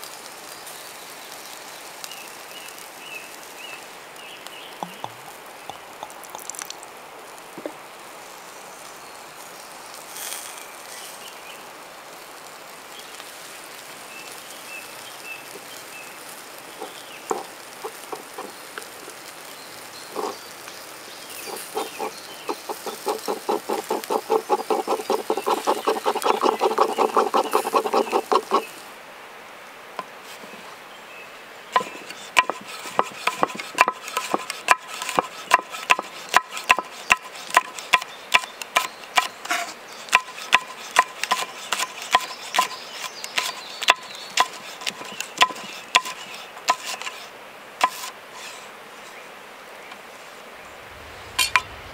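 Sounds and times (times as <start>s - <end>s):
knocks and taps: 4.8s - 5.2s, 17.3s - 17.5s
knife chopping on wooden board: 16.8s - 18.5s, 21.5s - 28.7s, 31.8s - 42.7s, 43.4s - 46.9s.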